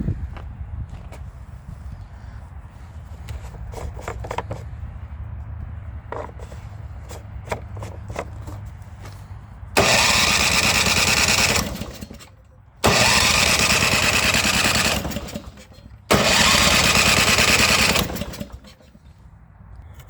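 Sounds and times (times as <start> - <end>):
small gas engine cranking: 9.8 - 19.1.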